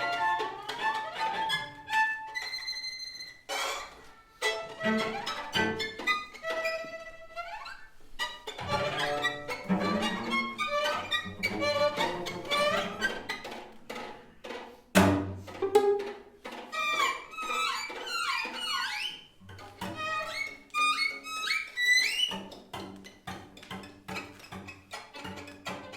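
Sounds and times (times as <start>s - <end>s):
string quartet playing: 0.0s - 14.2s, 14.9s - 18.6s.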